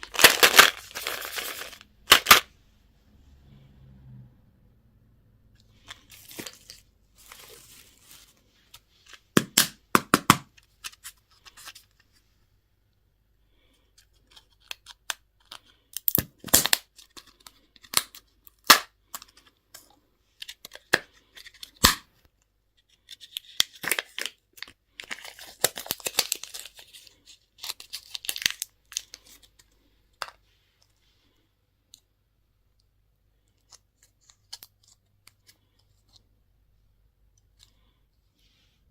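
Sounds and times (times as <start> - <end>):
plastic packaging rustling and tearing: 0.0 - 2.4, 5.8 - 9.1, 23.0 - 29.6.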